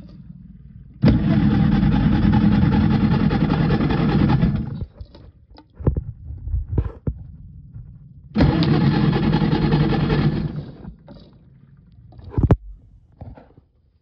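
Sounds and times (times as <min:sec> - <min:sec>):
motor running: 0:00.0 - 0:05.0, 0:08.4 - 0:11.3.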